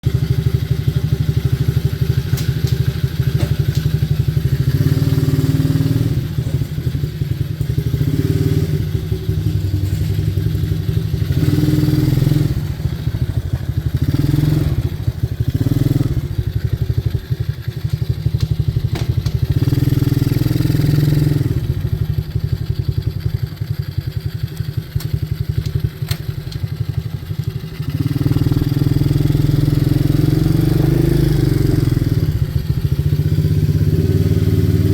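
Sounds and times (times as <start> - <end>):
small engine revving: 0.0 - 23.6, 24.2 - 34.9.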